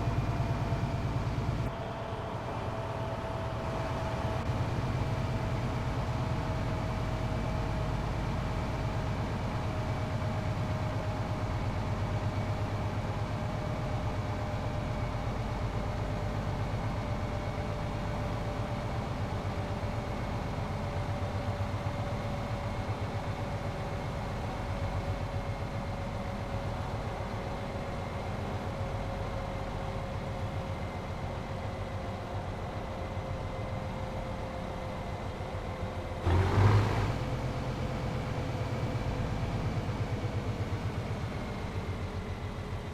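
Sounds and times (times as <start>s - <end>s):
loud engine burst: 36.2s - 38.2s.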